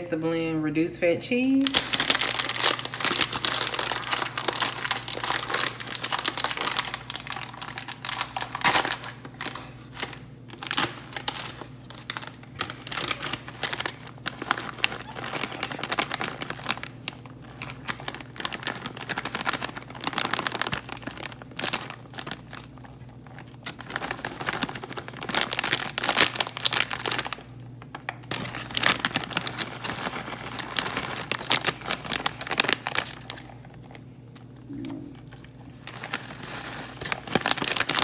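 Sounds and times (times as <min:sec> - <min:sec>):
plastic bag crinkling: 0:01.4 - 0:38.0.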